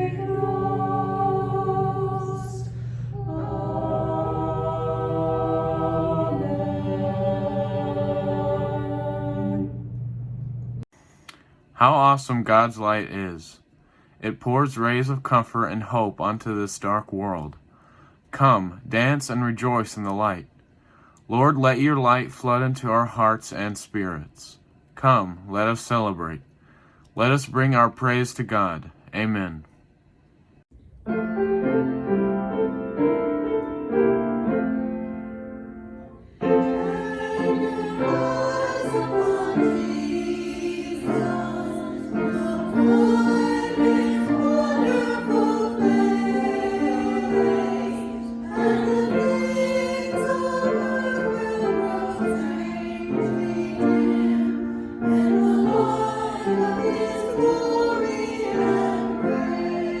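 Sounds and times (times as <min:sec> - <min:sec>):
voices singing a hymn: 0:00.0 - 0:09.9, 0:36.3 - 1:00.0
piano playing: 0:00.0 - 0:10.6, 0:31.0 - 1:00.0.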